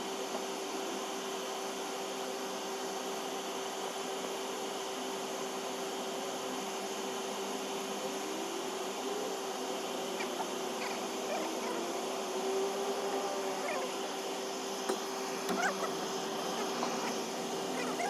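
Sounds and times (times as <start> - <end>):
machine hum: 9.4 - 18.0.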